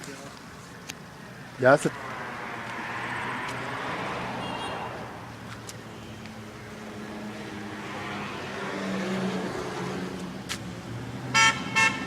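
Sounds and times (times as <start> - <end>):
car horn toot: 4.4 - 4.9, 11.3 - 12.0.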